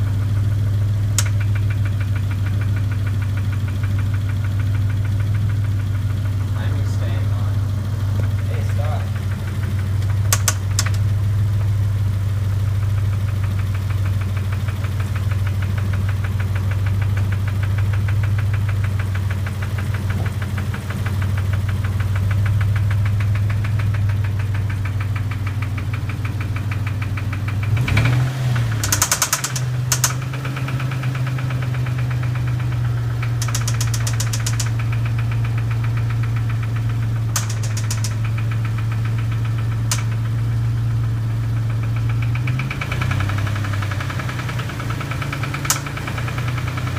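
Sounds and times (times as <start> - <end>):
car engine idling with ticking: 0.0 - 46.9
sharp clicks: 1.1 - 7.2, 9.9 - 11.1, 21.8 - 40.5, 41.8 - 46.9.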